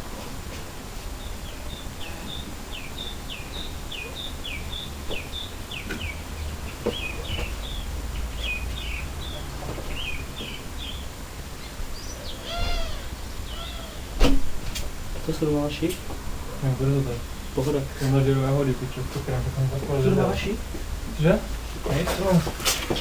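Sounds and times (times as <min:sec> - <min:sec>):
low rumble of outdoor noise: 0:00.0 - 0:23.0
small bird chirping: 0:01.2 - 0:14.2.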